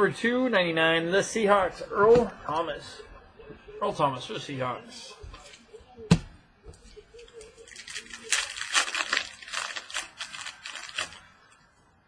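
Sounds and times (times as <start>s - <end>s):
trading cards rustling and crinkling: 6.8s - 11.7s.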